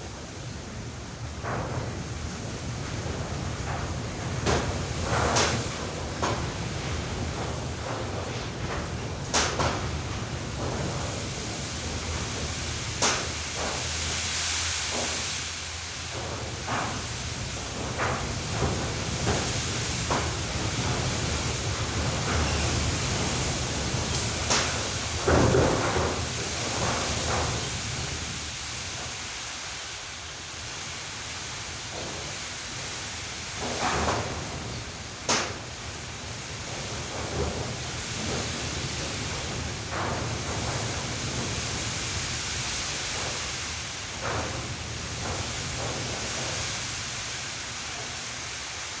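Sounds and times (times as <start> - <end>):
strong gusty wind: 0.0 - 29.3.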